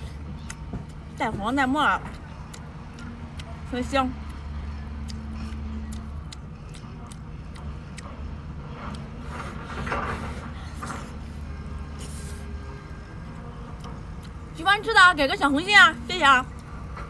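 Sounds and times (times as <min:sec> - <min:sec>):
slurping: 0:04.3 - 0:12.7.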